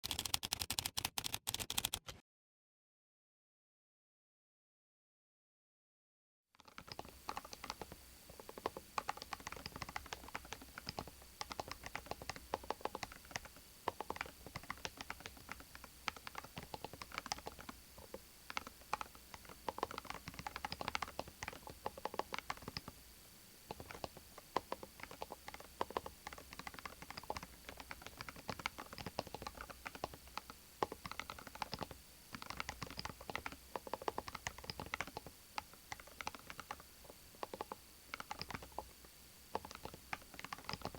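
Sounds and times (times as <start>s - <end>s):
keyboard typing clacks: 0.0s - 2.2s, 6.7s - 23.0s, 23.7s - 40.9s.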